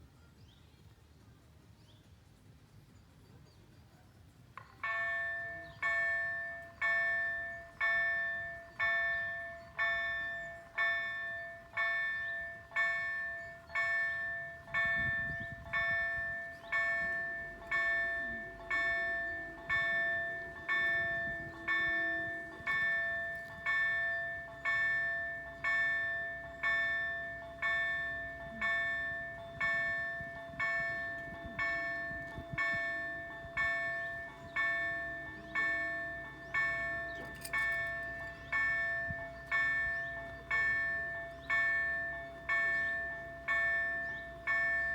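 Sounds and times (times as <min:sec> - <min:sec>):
level crossing bell ringing: 0:04.8 - 0:44.9.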